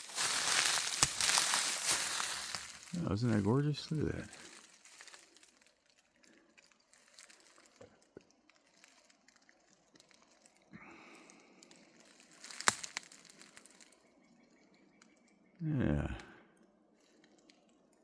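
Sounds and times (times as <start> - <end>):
footsteps through dry grass: 0.0 - 7.8, 11.7 - 14.0.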